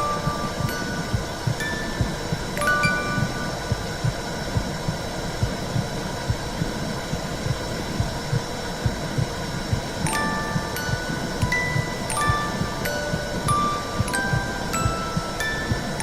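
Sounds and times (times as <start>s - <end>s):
wind chimes ringing: 0.0s - 3.7s, 10.1s - 16.0s
soft heartbeat: 0.0s - 16.0s.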